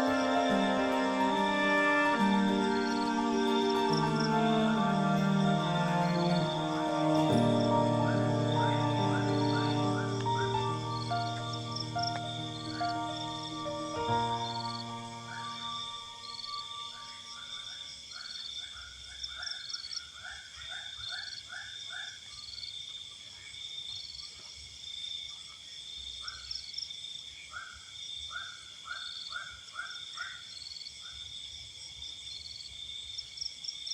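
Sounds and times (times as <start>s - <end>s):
high insect trill: 0.0s - 17.9s
frogs croaking: 0.0s - 22.6s.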